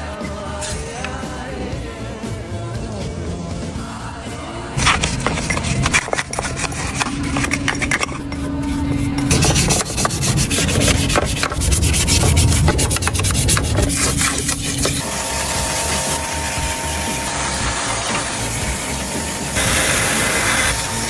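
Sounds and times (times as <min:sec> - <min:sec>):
rubbing and scraping on motor: 0:03.8 - 0:21.0.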